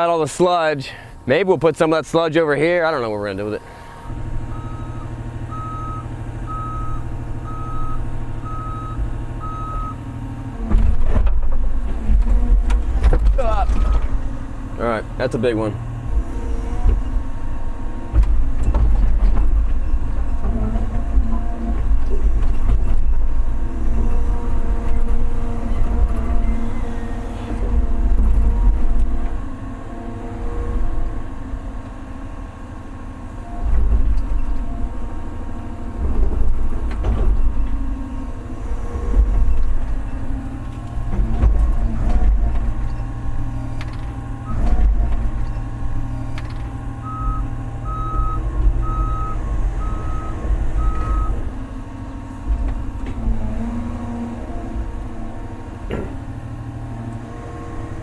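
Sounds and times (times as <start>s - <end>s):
excavator diesel engine: 0.0s - 58.0s
travel alarm beeps: 4.5s - 10.0s, 47.0s - 51.4s.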